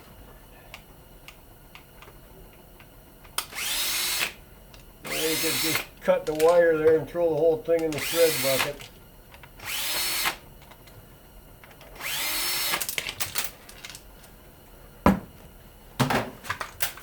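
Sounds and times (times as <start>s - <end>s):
power drill spinning: 3.5s - 4.4s, 5.0s - 6.6s, 7.8s - 8.9s, 9.6s - 10.4s, 11.9s - 12.9s.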